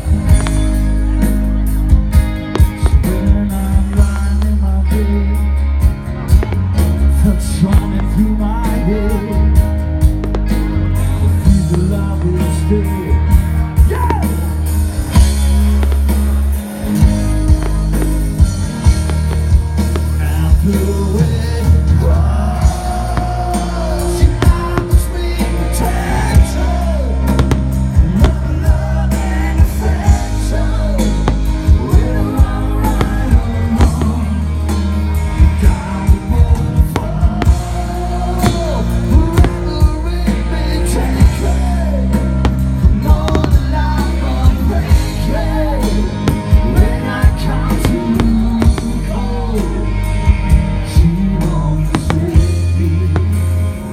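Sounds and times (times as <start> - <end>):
pop-rock song with singer: 0.0 - 53.9
firework bangs: 27.3 - 29.4.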